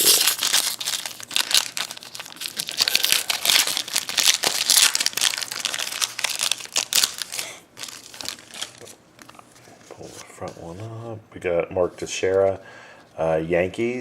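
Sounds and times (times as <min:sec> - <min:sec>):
plastic wrapper tearing and crinkling: 0:00.0 - 0:09.4.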